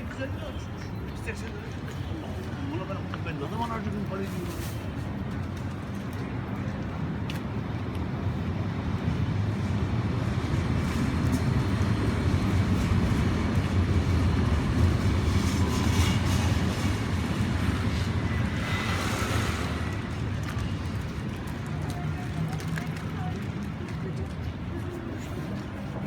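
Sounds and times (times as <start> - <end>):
passing vehicle engine rumble: 7.8 - 26.0.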